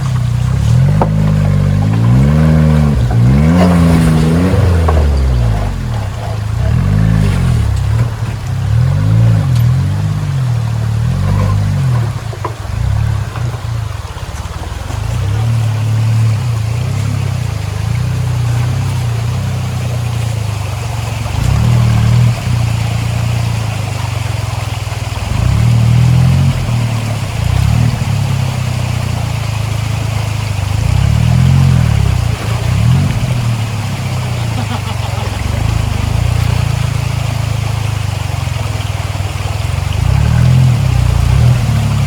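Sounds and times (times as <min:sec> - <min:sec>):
small engine revving under load: 0:00.0 - 0:14.1
rushing water: 0:00.0 - 0:42.0.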